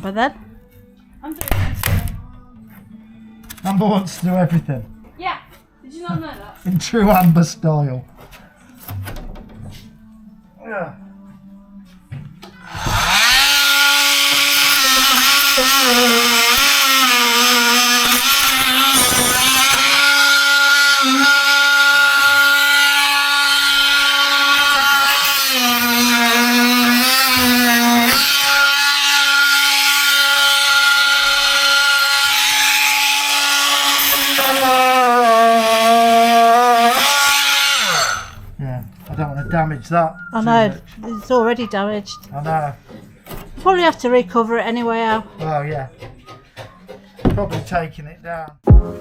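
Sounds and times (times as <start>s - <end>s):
oscillating multi-tool cutting: 12.4s - 38.4s.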